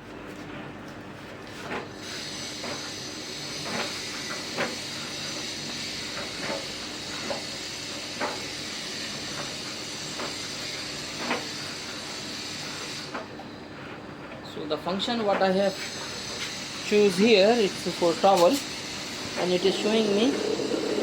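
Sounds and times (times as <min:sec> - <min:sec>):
tumble dryer motor humming: 0:17.7 - 0:21.0.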